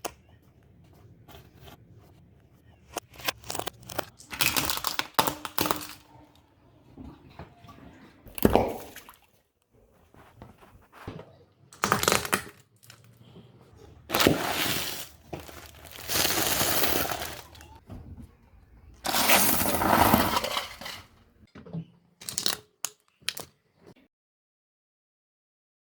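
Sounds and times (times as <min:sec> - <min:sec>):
objects crunching under car tyres: 0:11.8 - 0:17.8, 0:19.0 - 0:21.2.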